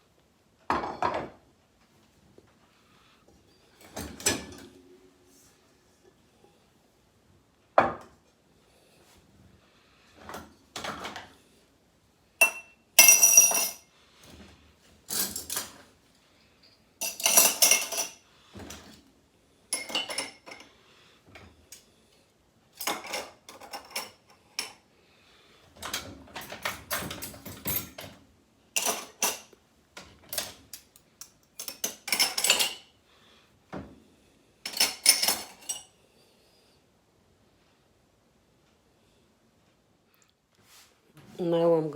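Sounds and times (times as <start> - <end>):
dishes and cutlery clattering: 3.8 - 4.8, 12.4 - 13.9, 15.1 - 15.9, 16.6 - 19.0, 19.7 - 20.7, 22.8 - 24.8, 25.8 - 28.2, 28.8 - 32.9, 34.6 - 35.9.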